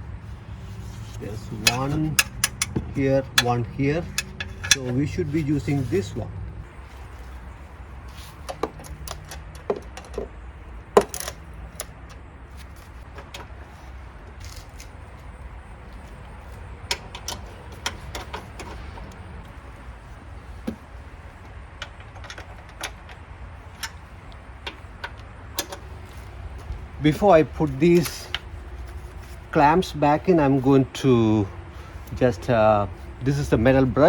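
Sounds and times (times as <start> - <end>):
metal tools clinking: 0.6 - 6.2, 16.1 - 19.3, 20.8 - 29.1.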